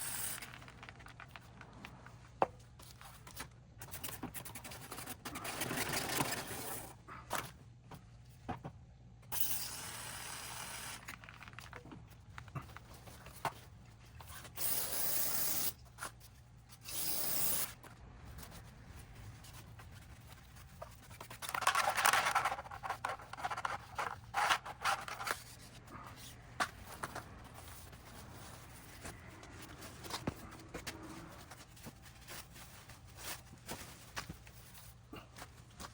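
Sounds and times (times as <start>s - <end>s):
scraping and rubbing: 17.8s - 35.9s.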